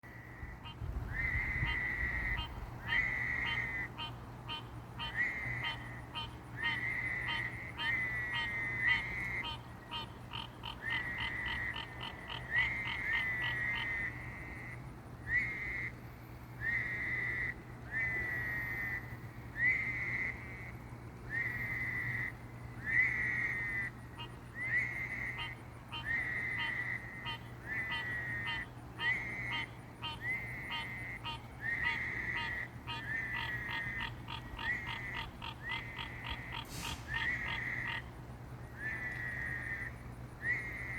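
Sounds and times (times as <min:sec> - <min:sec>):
frogs calling: 0:00.0 - 0:40.9
fast run of short pulses: 0:36.5 - 0:37.6
brief hiss: 0:36.6 - 0:37.4.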